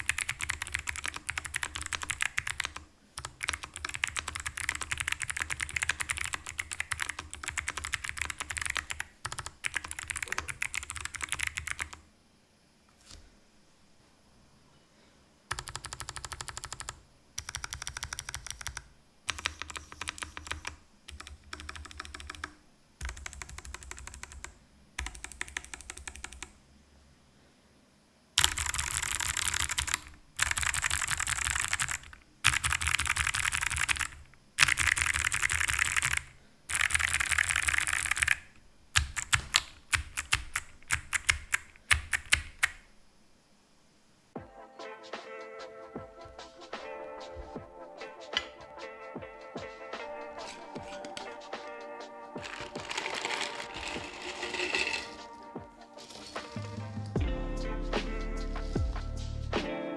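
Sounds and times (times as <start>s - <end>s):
mechanical keyboard typing: 0.0s - 12.0s, 15.5s - 26.6s, 28.4s - 42.9s, 52.4s - 55.4s.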